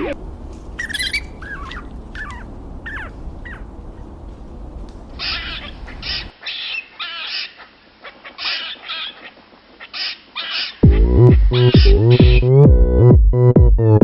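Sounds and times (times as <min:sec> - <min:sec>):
steady background hiss: 0:00.0 - 0:10.8
harsh squawking animal calls: 0:00.8 - 0:03.7, 0:05.2 - 0:12.5.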